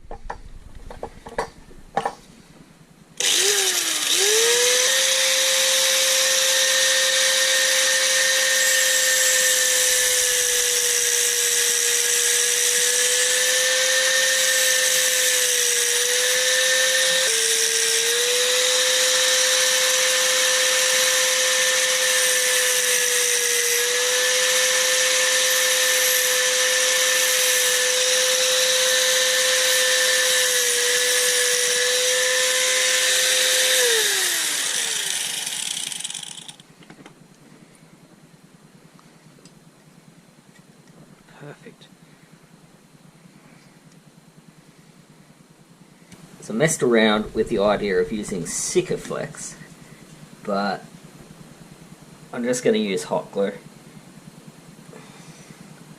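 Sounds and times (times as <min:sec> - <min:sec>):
power grinder whining on metal: 0:03.2 - 0:36.7.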